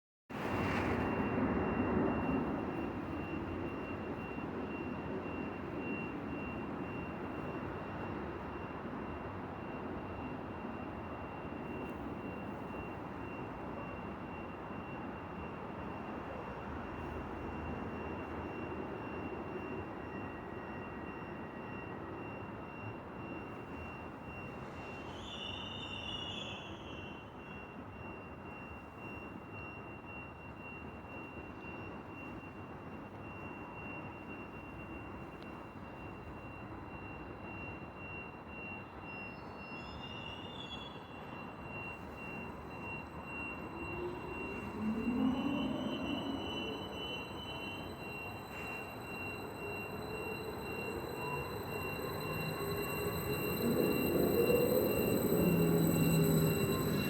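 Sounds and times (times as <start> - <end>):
passenger train rumbling: 0.3 - 57.0
high whine: 32.6 - 57.0
warbling chirp: 42.3 - 57.0.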